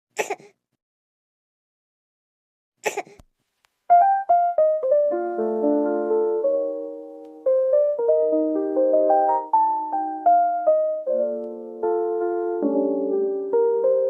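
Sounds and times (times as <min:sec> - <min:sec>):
piano music: 0:03.9 - 0:14.0.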